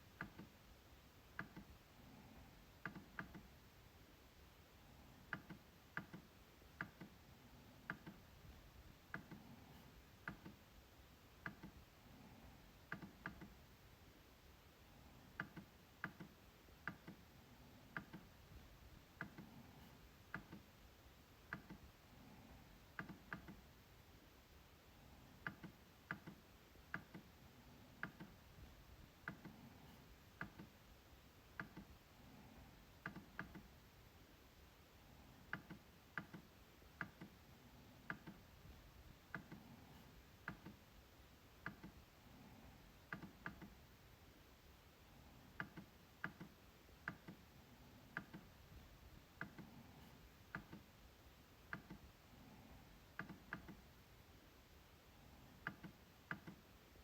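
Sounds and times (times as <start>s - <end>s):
trackpad clicks: 2.8s - 3.5s, 5.3s - 7.2s, 7.8s - 8.3s, 10.2s - 10.6s, 11.4s - 11.8s, 12.9s - 13.6s, 15.4s - 17.2s, 25.4s - 27.3s, 28.0s - 28.4s, 33.0s - 33.7s, 35.5s - 37.4s, 41.6s - 42.0s, 43.1s - 43.8s, 45.6s - 47.4s, 51.7s - 52.0s, 55.6s - 56.6s.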